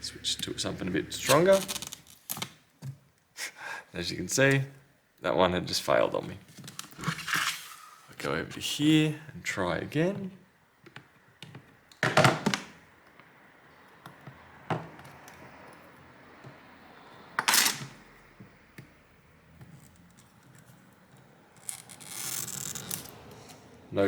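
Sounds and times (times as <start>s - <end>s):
hand tool scraping and clicking: 1.2s - 2.5s.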